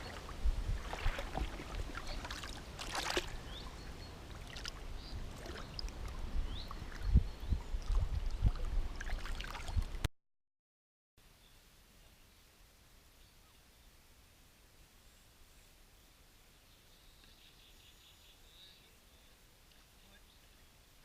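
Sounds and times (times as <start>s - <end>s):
water sloshing and splashing: 0.0s - 3.7s, 4.3s - 10.1s.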